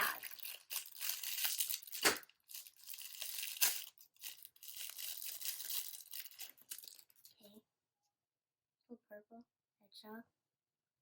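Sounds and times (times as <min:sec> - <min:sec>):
plastic packaging crinkling: 0:00.0 - 0:07.4
sharp plastic crackles: 0:00.0 - 0:07.4.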